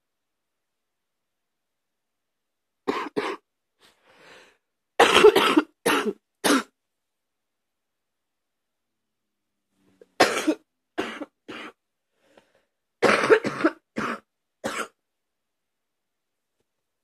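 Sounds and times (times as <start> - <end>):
person coughing deeply: 2.9 - 3.5, 5.0 - 6.8, 10.2 - 11.8, 13.0 - 15.0.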